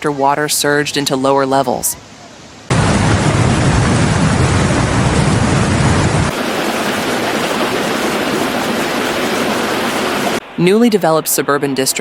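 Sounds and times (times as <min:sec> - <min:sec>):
water rushing: 0:00.0 - 0:12.0
deep rumble: 0:02.7 - 0:06.3.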